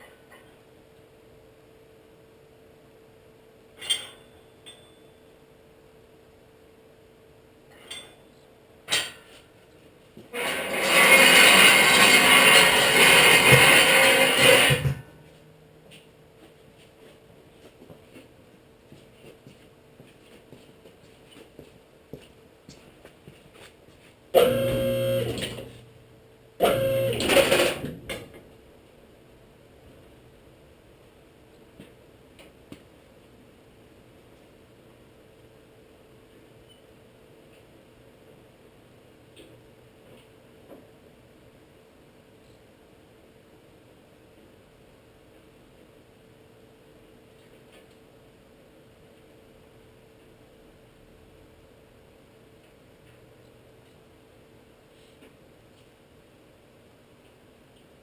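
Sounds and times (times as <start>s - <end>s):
faint steady hum: 0.0s - 10.4s, 14.2s - 58.0s
metal tools clinking: 3.8s - 5.1s.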